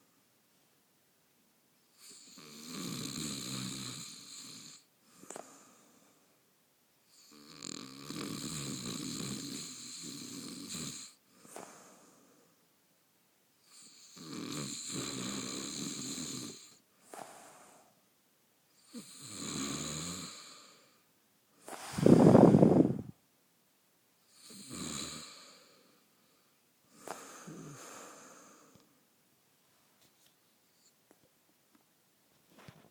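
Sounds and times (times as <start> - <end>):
man snoring: 2.0 - 6.0, 7.2 - 12.2, 13.7 - 17.8, 18.8 - 21.0, 24.3 - 25.9, 26.9 - 28.8.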